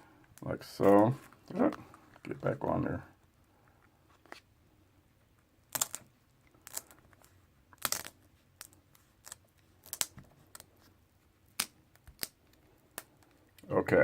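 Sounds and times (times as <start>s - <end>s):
velcro strips clicking and rustling: 5.7s - 10.8s, 11.5s - 13.6s.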